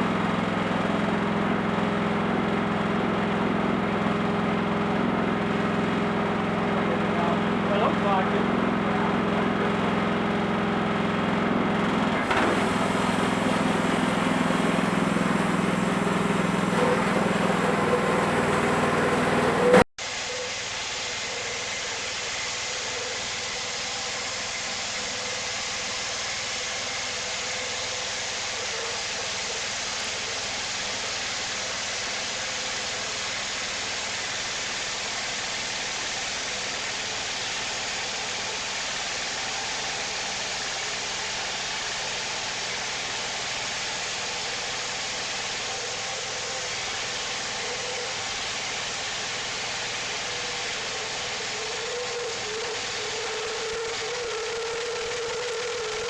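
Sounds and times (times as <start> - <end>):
sawmill engine droning: 0.0 - 56.0.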